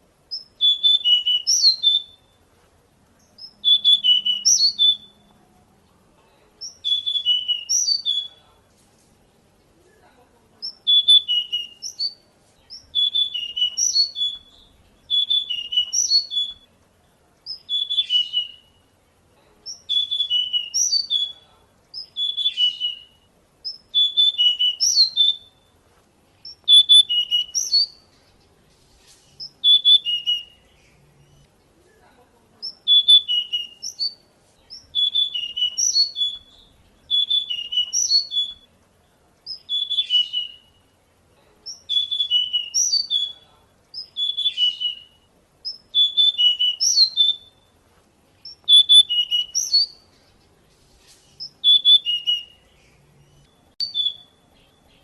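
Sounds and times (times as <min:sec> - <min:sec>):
bird whistled song: 0:00.3 - 0:02.4, 0:03.2 - 0:05.4, 0:06.6 - 0:08.5, 0:10.6 - 0:16.8, 0:17.5 - 0:18.9, 0:19.7 - 0:25.8, 0:26.4 - 0:28.4, 0:29.1 - 0:31.5, 0:32.6 - 0:38.8, 0:39.5 - 0:41.0, 0:41.7 - 0:47.8, 0:48.4 - 0:50.4, 0:51.0 - 0:55.0.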